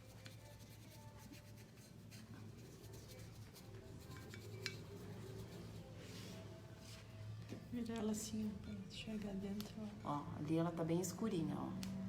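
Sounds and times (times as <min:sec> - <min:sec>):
paintbrush strokes scratching: 0:00.0 - 0:07.2.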